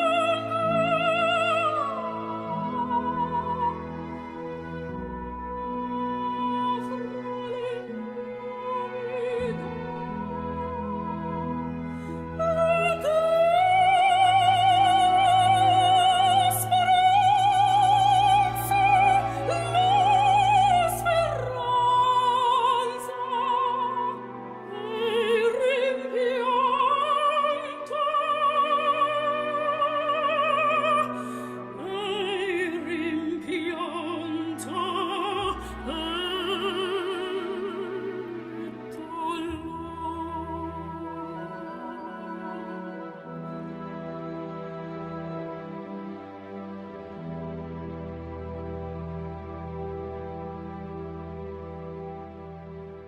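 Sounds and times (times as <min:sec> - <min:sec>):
low sustained accompaniment: 0:00.0 - 0:53.0
operatic singing: 0:00.0 - 0:53.0.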